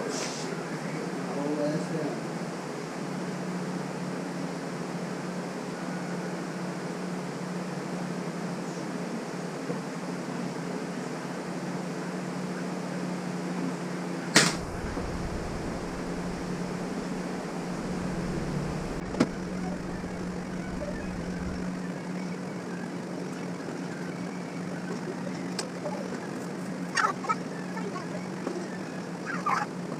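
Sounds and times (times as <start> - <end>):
fan humming: 14.3 - 22.6.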